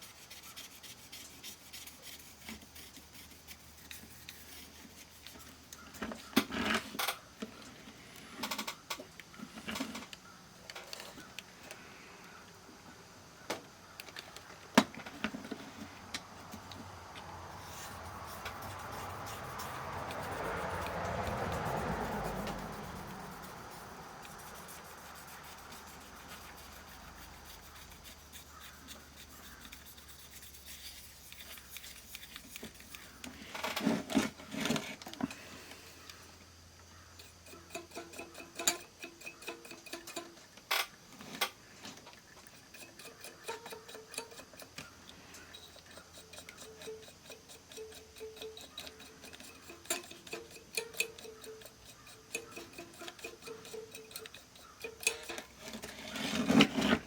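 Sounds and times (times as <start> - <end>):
clatter of parts: 37.2 - 57.0.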